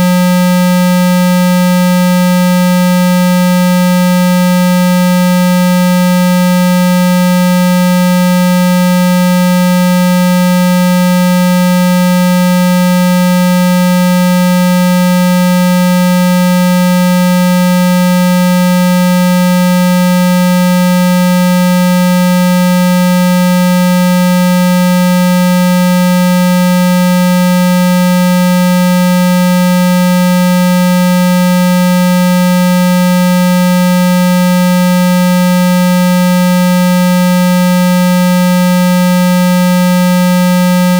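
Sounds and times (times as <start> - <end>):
low synthetic buzz tone: 0.0 - 2.2.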